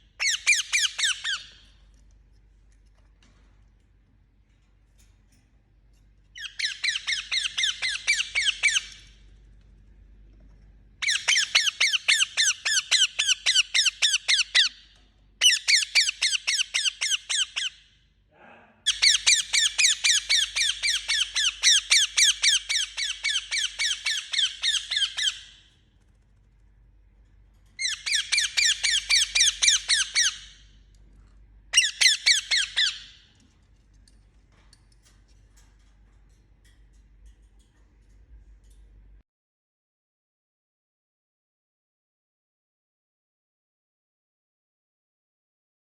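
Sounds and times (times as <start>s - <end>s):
parakeet squawking: 0.2s - 1.6s, 6.4s - 9.1s, 18.9s - 25.6s, 27.8s - 30.6s, 31.7s - 33.2s.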